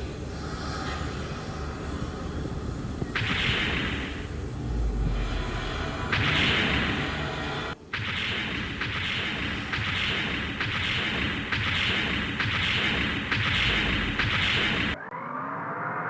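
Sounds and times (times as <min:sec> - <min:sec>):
rising whine: 0:00.6 - 0:07.8
heavy mechanical hits: 0:03.1 - 0:15.0.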